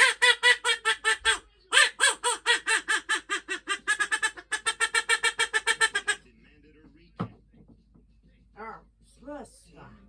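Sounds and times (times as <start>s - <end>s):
duck quacking: 0.0s - 6.2s.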